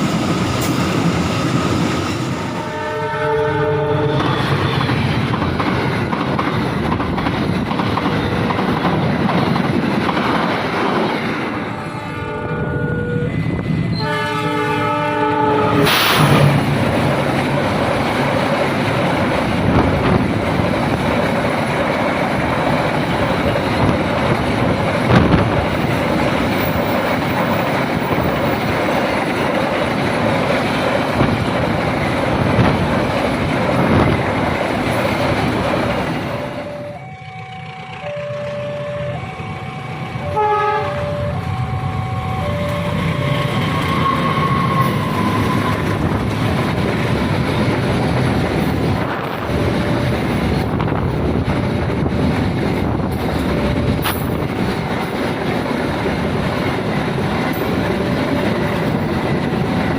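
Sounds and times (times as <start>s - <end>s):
train passing with wheel clatter: 0.0s - 59.9s
level crossing alarm tones: 36.2s - 45.9s.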